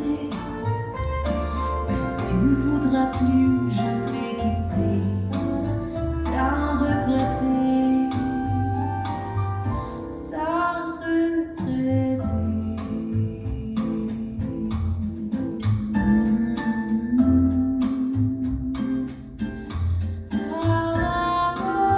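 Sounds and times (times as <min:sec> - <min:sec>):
woman singing: 0:00.0 - 0:14.9, 0:20.4 - 0:21.9
bass: 0:00.0 - 0:21.9
piano: 0:00.0 - 0:21.9.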